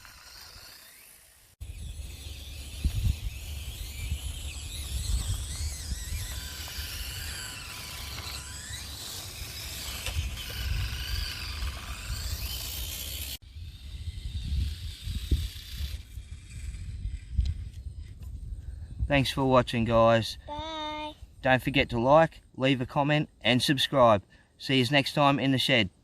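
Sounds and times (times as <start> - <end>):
small electric motor whining: 0.0 - 18.7.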